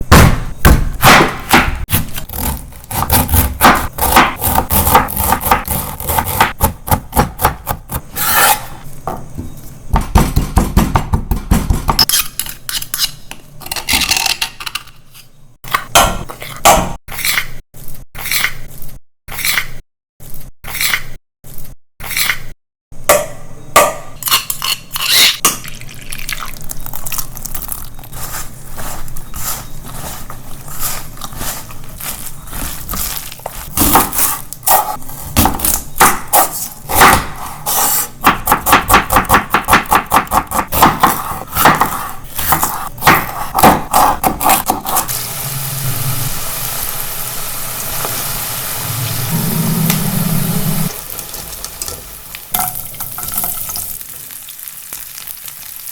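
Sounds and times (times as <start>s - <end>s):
food sizzling in a pan: 45.1s - 55.9s.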